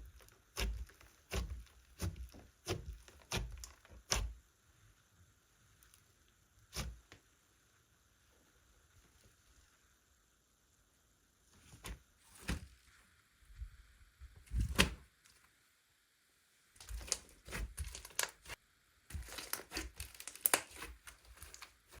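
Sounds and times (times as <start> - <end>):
slime squishing: 0.0 - 4.4, 16.8 - 22.0.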